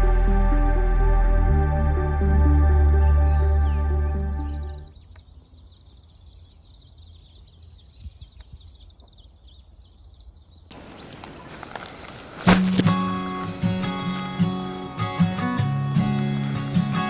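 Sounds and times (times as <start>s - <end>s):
small birds chirping: 4.4s - 17.0s.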